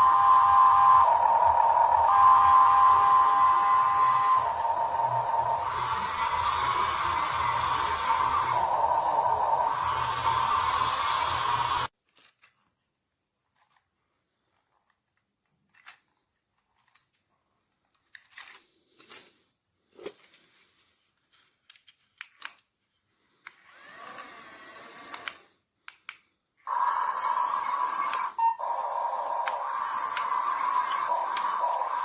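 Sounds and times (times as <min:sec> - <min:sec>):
small electric gear motors running: 0:00.0 - 0:11.9, 0:23.6 - 0:25.5, 0:26.7 - 0:32.0.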